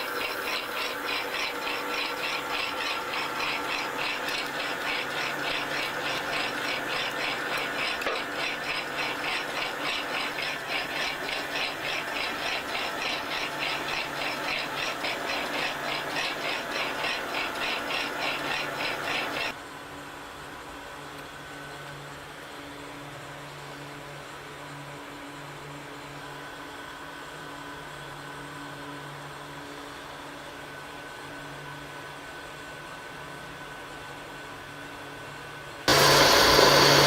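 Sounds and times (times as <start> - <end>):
machine squealing pulse: 0.0 - 19.5
mechanical hum: 0.0 - 37.0.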